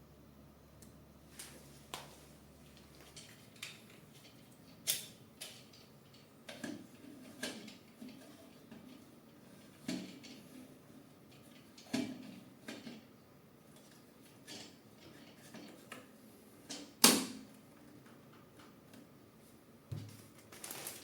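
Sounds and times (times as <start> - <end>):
light clicks and knocks of parts: 0.8 - 9.0.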